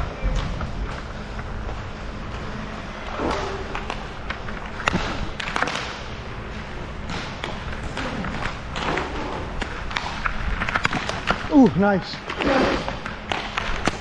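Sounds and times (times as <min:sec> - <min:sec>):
hockey sticks and puck clacking: 0:03.2 - 0:14.0.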